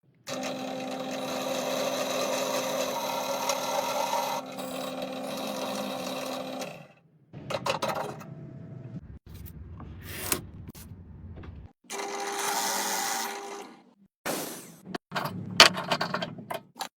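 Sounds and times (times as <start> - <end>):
power tool working wood: 0.2 - 6.9, 11.9 - 13.8
knocks and clicks: 7.3 - 8.4.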